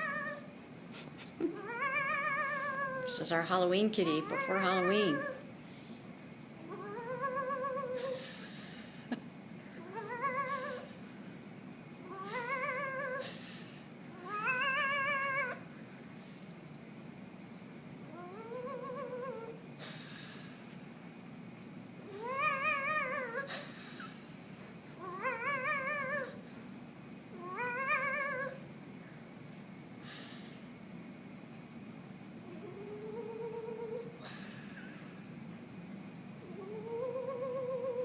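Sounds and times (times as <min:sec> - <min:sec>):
cat meowing: 0:00.0 - 0:00.5, 0:01.6 - 0:03.2, 0:04.1 - 0:05.4, 0:14.2 - 0:15.6, 0:22.1 - 0:23.5, 0:25.0 - 0:26.4, 0:27.4 - 0:28.6.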